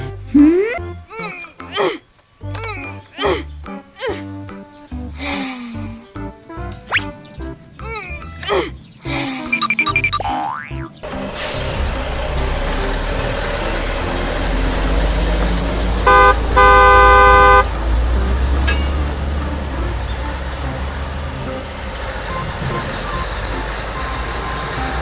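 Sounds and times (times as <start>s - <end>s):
traffic rumble: 0.0s - 25.0s
vehicle horn honking: 16.0s - 20.6s.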